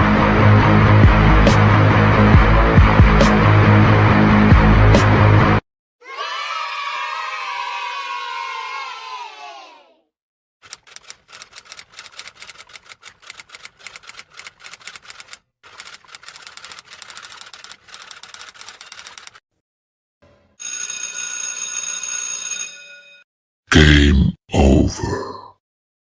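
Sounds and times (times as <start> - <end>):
typewriter keys clattering: 10.6 - 19.4
typewriter bell ringing: 18.5 - 19.4, 20.6 - 23.2
short loud vocal sound: 23.7 - 25.5.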